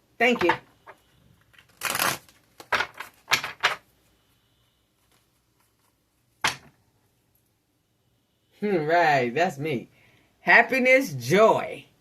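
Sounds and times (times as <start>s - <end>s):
cards snapping and slapping: 1.5s - 3.8s.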